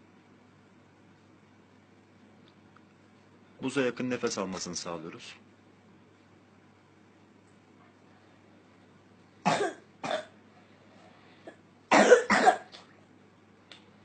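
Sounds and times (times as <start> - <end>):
child coughing: 9.4 - 10.4, 11.5 - 12.8.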